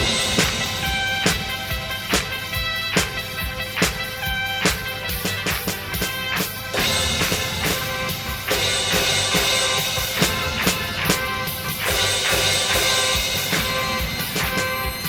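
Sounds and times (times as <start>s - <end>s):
disco-style christmas music: 0.0s - 15.0s.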